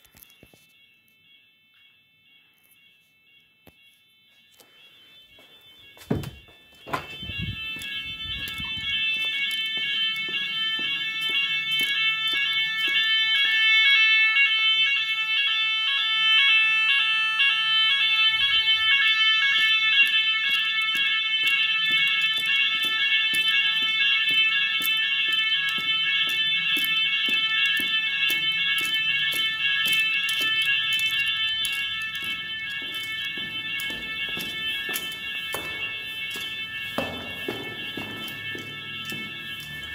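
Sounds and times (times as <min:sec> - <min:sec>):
pulsing fire alarm siren: 0:00.0 - 0:39.9.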